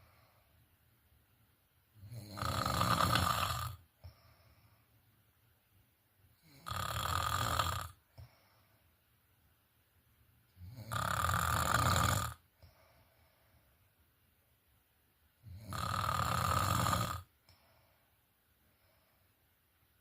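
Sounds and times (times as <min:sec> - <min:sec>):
person snoring: 0:02.0 - 0:03.8, 0:06.4 - 0:08.3, 0:10.6 - 0:12.4, 0:15.4 - 0:17.3.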